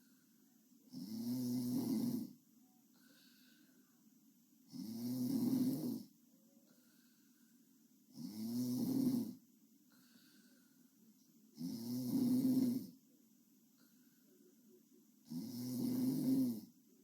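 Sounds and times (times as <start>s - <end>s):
faint breathing: 0.0s - 0.6s, 2.9s - 4.1s, 6.6s - 7.8s, 9.9s - 11.1s, 13.8s - 14.6s
girl snoring: 0.9s - 2.4s, 4.7s - 6.1s, 8.1s - 9.4s, 11.6s - 13.0s, 15.2s - 16.7s.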